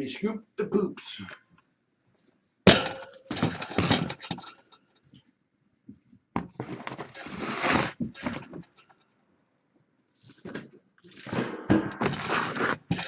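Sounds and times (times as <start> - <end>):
scoop scraping cat litter: 7.0 - 8.3, 12.0 - 13.0.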